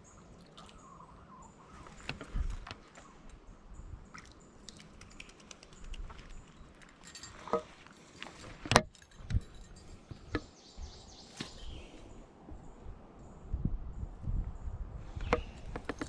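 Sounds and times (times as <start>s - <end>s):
handling clicks and knocks: 4.7s - 10.6s, 15.2s - 16.0s.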